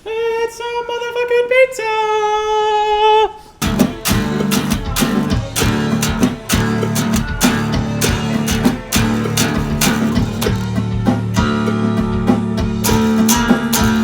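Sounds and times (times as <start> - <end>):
heavy metal music: 3.6 - 14.0.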